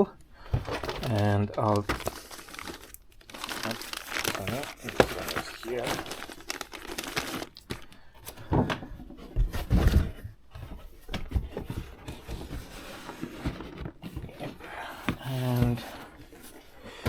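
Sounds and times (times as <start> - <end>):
plastic bags rustling: 0.4 - 8.4.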